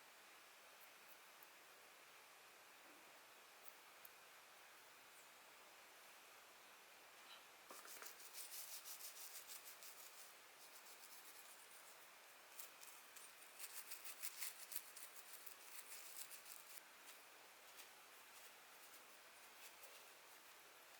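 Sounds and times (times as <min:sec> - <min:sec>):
scratchy rubbing of reel parts: 0:12.6 - 0:16.8.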